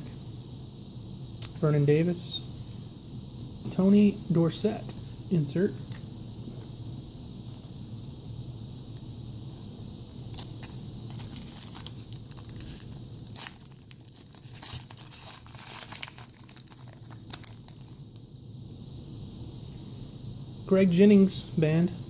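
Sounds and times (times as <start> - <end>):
wrapper being torn and crinkled: 10.2 - 18.2.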